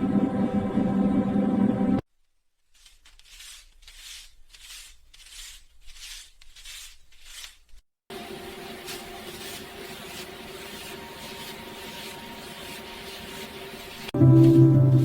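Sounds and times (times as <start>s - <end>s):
banknotes swishing: 2.7s - 7.8s, 8.6s - 15.0s.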